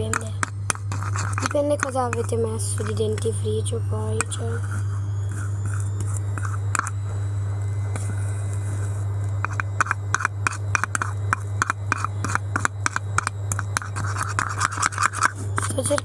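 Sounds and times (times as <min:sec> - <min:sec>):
spoon stirring slime: 0:00.0 - 0:07.0, 0:08.0 - 0:16.0
low hum: 0:00.0 - 0:16.0.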